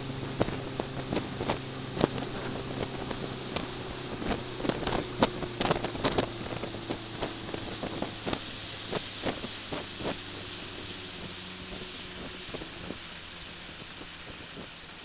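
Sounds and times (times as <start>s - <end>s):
boat engine running: 0.0s - 15.0s.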